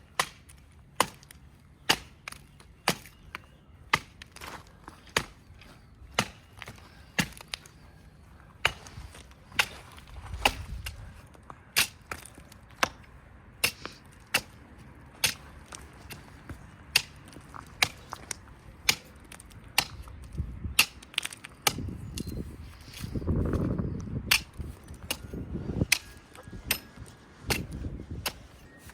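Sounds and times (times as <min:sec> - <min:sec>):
axe chopping into tree trunk: 0:08.6 - 0:11.0.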